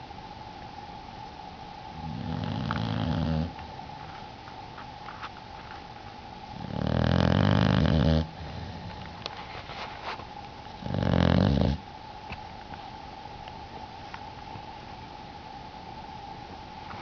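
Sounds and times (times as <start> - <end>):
puppy snoring: 2.0 - 3.6, 6.5 - 9.2, 10.8 - 11.9.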